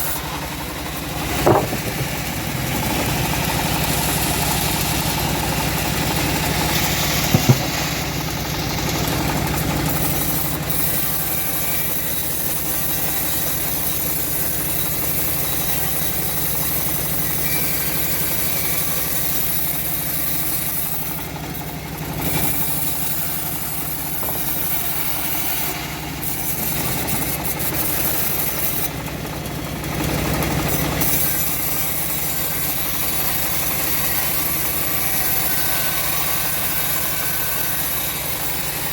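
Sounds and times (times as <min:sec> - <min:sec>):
sawmill engine running: 0:00.0 - 0:38.9
sharp knocks: 0:01.3 - 0:03.1, 0:07.2 - 0:08.1.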